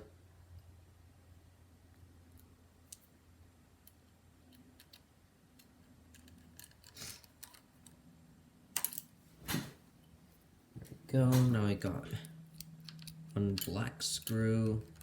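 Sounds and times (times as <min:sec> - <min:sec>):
faint low hum: 0:00.0 - 0:15.0
clicks and metallic ticks of screws: 0:12.6 - 0:15.0.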